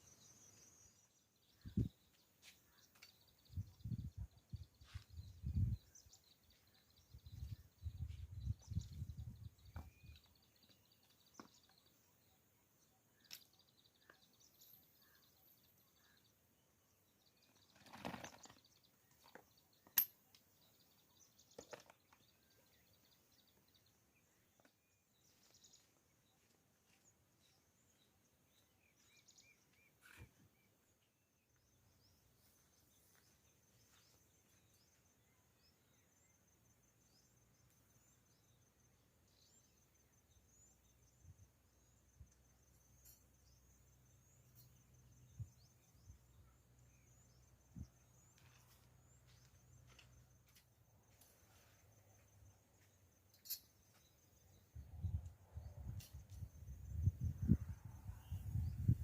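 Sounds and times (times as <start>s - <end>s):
small birds chirping: 0.0s - 59.0s.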